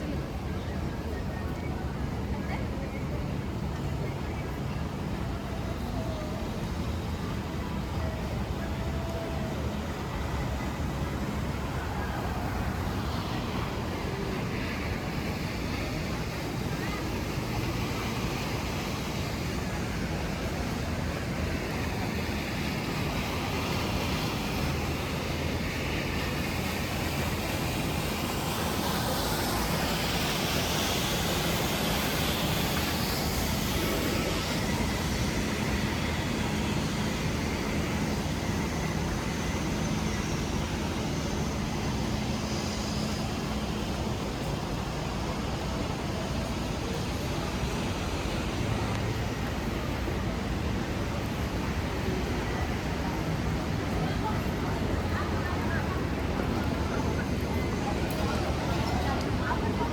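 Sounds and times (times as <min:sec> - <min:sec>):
even hiss: 0:10.9 - 0:53.8.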